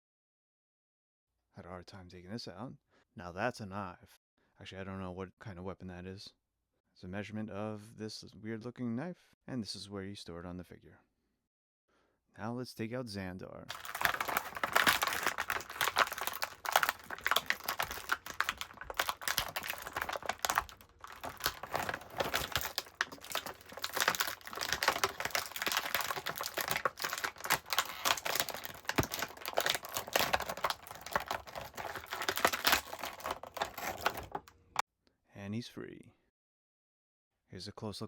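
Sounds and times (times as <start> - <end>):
plastic tray clicking and crackling: 13.7 - 34.8.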